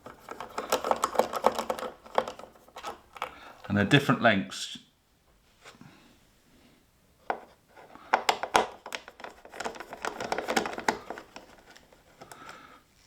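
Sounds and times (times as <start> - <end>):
screws and screwdriver clattering: 0.0 - 3.4, 8.4 - 12.4.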